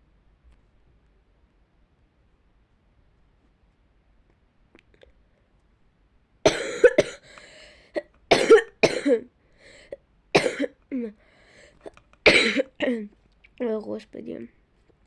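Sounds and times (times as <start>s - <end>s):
girl coughing: 6.5s - 9.3s, 10.4s - 11.1s, 12.3s - 13.0s.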